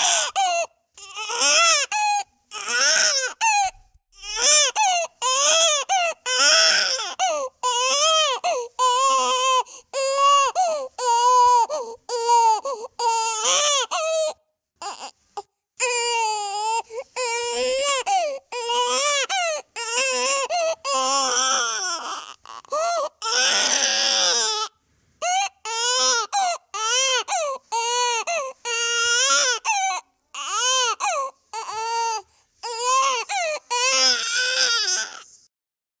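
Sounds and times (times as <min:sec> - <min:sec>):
infant crying: 0:00.0 - 0:35.3.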